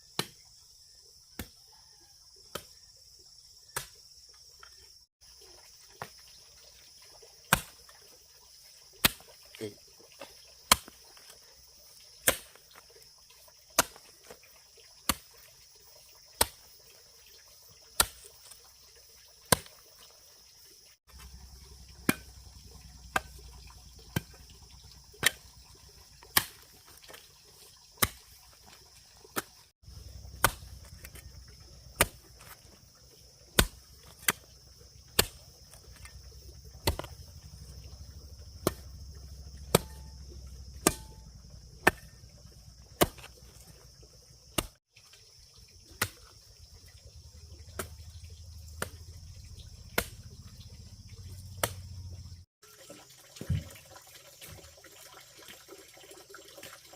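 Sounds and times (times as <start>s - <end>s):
sharp chopping strikes: 3.7s - 4.0s, 7.5s - 7.8s, 10.7s - 11.0s, 12.2s - 12.6s, 13.8s - 14.0s, 15.1s - 15.3s, 18.0s - 18.6s, 19.5s - 19.8s, 22.0s - 22.4s, 23.1s - 23.4s, 25.2s - 25.4s, 26.3s - 26.7s, 28.0s - 28.3s, 30.2s - 31.2s, 31.9s - 32.6s, 33.6s - 34.4s, 35.1s - 36.2s, 36.8s - 37.2s, 38.6s - 39.0s, 39.6s - 42.2s, 43.0s - 43.4s, 44.6s - 44.8s, 48.8s - 49.0s, 49.9s - 50.2s, 51.6s - 51.9s.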